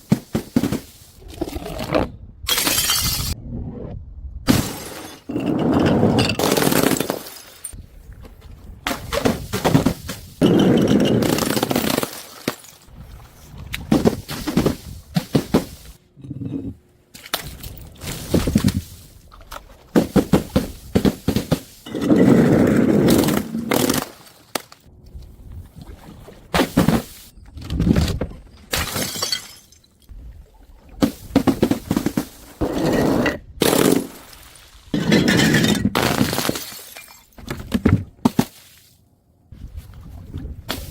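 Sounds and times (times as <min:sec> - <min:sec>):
objects smashing and cracking: 0:06.0 - 0:07.8, 0:09.0 - 0:12.9, 0:35.0 - 0:38.5.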